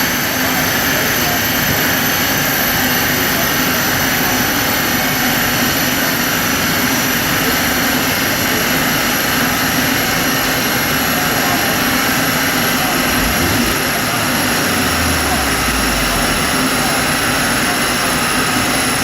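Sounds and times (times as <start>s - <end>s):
machinery rushing: 12.7s - 18.1s.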